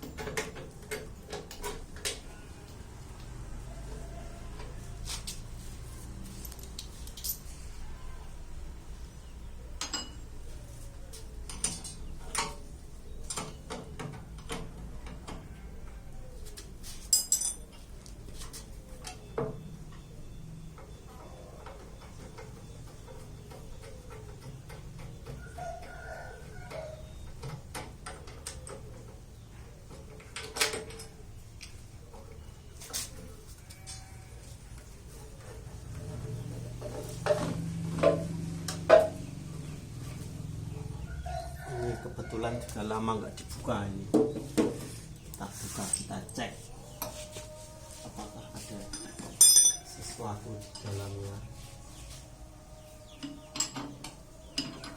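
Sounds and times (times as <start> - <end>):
metallic clinks and knocks: 6.2 - 7.6, 9.8 - 10.2, 17.0 - 17.9, 48.9 - 50.9.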